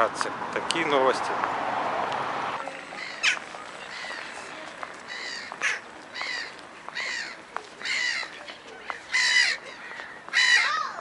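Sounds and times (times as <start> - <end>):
gulls calling: 2.6 - 11.0.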